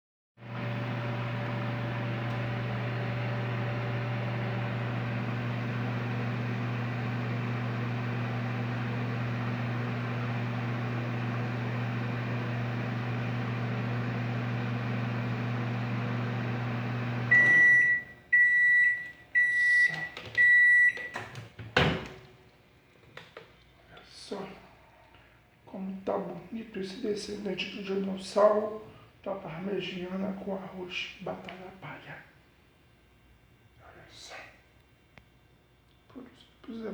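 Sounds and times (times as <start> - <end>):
microwave oven humming: 0.4 - 22.3.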